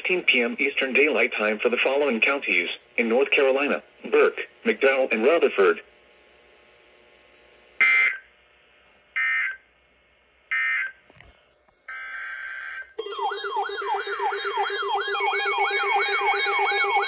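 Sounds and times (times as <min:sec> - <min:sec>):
shrill digital data tones: 0:13.0 - 0:17.0
warbling alert tone: 0:13.0 - 0:17.0.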